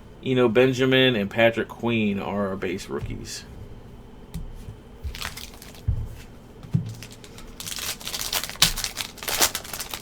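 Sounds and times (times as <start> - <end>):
soft knocks: 3.0 - 3.5
wrapper crinkling and tearing: 5.1 - 5.8, 6.9 - 10.0.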